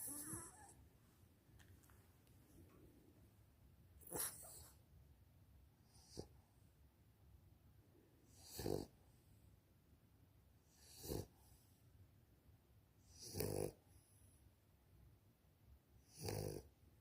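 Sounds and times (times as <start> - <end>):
dog snoring: 0.0 - 0.8, 4.0 - 4.8, 5.8 - 6.4, 8.3 - 9.0, 10.6 - 11.6, 13.0 - 13.8, 16.0 - 16.7.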